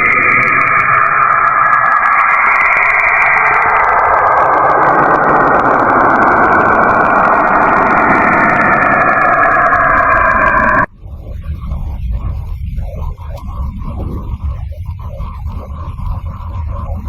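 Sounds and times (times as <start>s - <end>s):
rushing rumbling drone: 0.0s - 17.0s.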